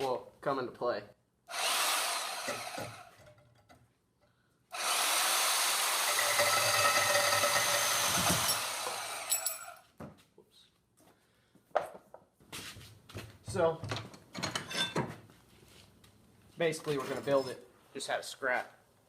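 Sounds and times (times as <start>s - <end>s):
power saw cutting: 1.5s - 3.2s, 4.7s - 9.8s.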